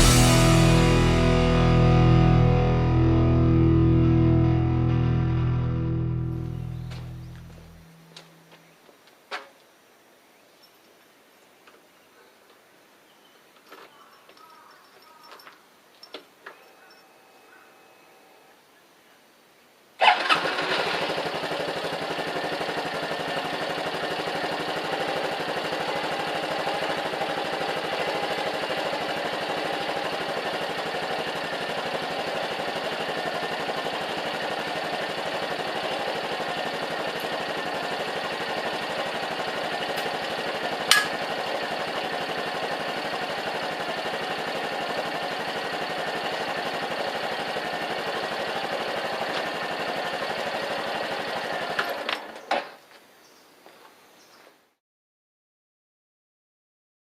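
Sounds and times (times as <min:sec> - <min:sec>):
motorcycle engine starting and idling: 0:00.0 - 0:08.4, 0:20.0 - 0:52.8
sharp click: 0:40.9 - 0:41.2.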